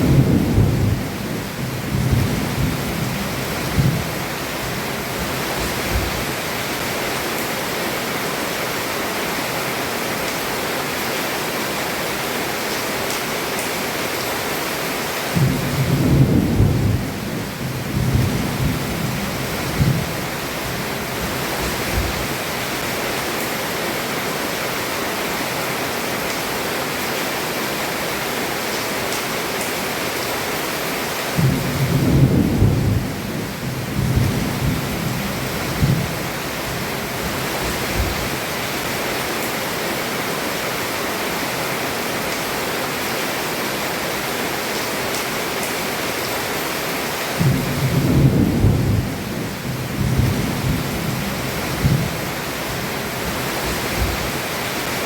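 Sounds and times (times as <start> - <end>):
thunder rumbling: 0.0 - 6.3, 15.4 - 22.4, 31.4 - 38.4, 47.4 - 54.5
heavy rain on a roof: 0.0 - 55.0.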